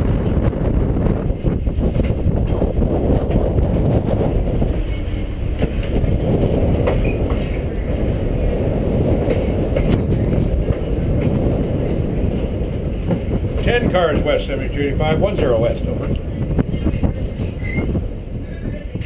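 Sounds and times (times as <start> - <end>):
train wheels rumbling on rails: 0.0 - 19.0
sharp clicks of train wheels: 1.0 - 18.2.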